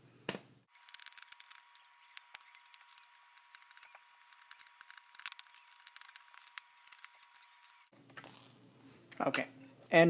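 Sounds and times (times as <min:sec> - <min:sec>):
screwdriver clicks and scrapes: 0:00.8 - 0:07.9.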